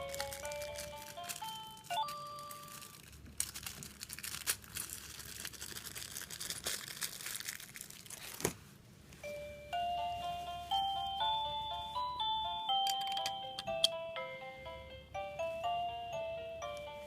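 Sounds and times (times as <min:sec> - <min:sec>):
electronic chime notes: 0:09.2 - 0:17.0.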